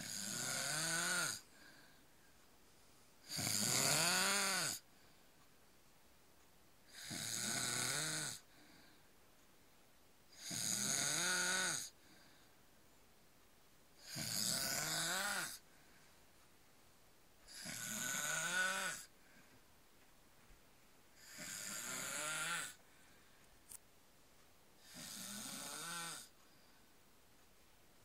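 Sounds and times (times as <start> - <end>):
man snoring: 0.0 - 1.5, 3.2 - 4.8, 6.9 - 8.4, 10.3 - 12.0, 14.0 - 15.6, 17.5 - 19.1, 21.2 - 22.8, 24.8 - 26.3
quiet breathing: 0.0 - 7.3, 8.4 - 10.9, 11.8 - 28.0.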